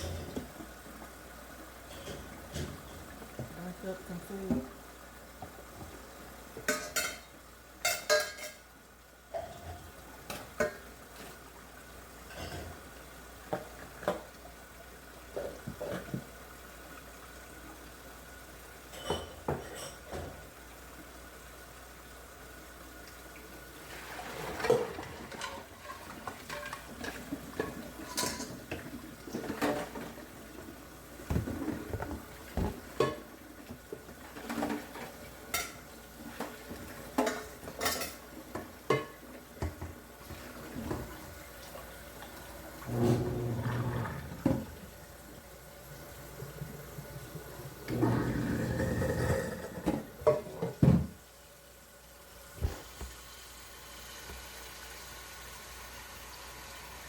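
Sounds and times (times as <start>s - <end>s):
running water: 0.0s - 57.0s
dishes and cutlery clinking: 6.6s - 8.6s, 18.9s - 20.4s, 24.6s - 28.6s, 37.2s - 38.2s.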